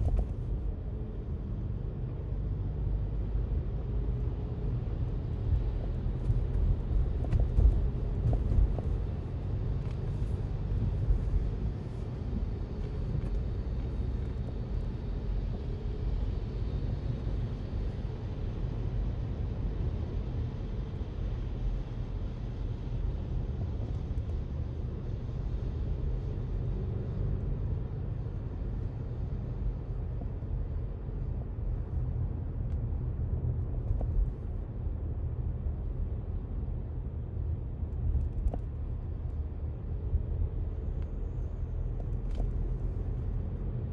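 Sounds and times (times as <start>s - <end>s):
low rumble of road traffic: 0.0s - 43.9s.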